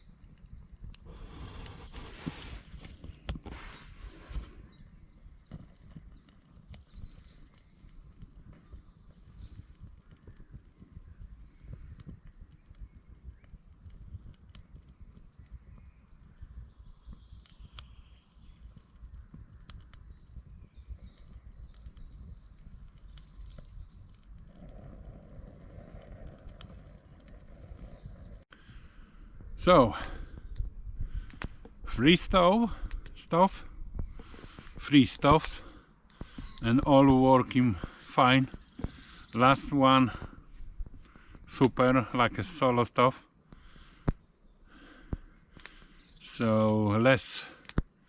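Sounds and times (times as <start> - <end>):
small birds chirping: 0.0 - 47.7
faint clicks: 45.0 - 46.0.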